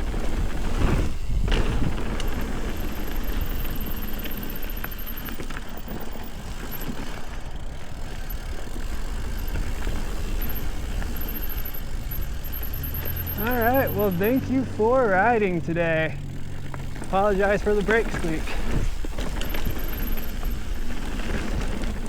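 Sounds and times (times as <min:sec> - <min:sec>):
wind rumble on microphone: 0:00.0 - 0:03.1
bike tyre and drivetrain rattle: 0:00.0 - 0:22.0.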